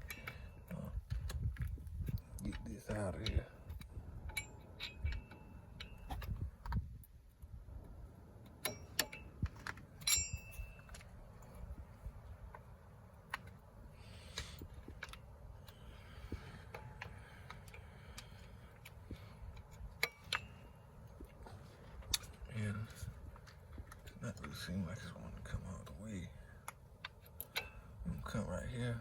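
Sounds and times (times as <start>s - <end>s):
screwdriver tapping and scraping metal: 0.0s - 6.8s, 8.4s - 11.6s, 14.2s - 28.8s
sharp metallic clinks: 8.6s - 9.4s, 10.0s - 11.6s, 19.5s - 21.4s.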